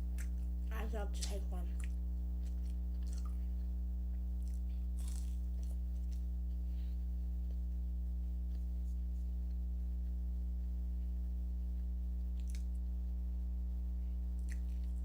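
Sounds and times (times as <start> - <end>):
chewing food crunches: 0.0 - 0.6, 1.8 - 10.2, 11.8 - 13.0, 14.3 - 15.0
low hum: 0.0 - 15.0.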